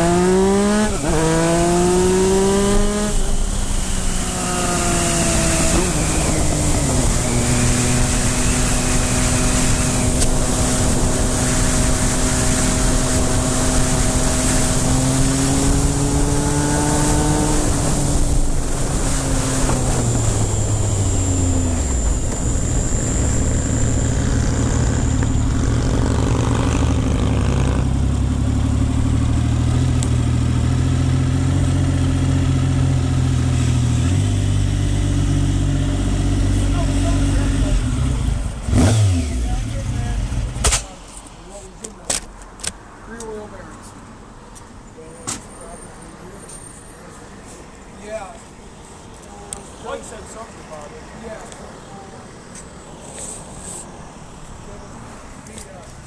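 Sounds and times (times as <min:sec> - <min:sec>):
motorcycle engine running: 0:00.0 - 0:40.6
wind noise: 0:00.1 - 0:27.5.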